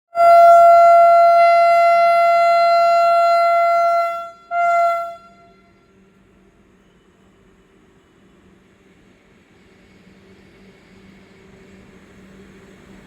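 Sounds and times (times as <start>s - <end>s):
train horn blasts: 0.1s - 6.0s.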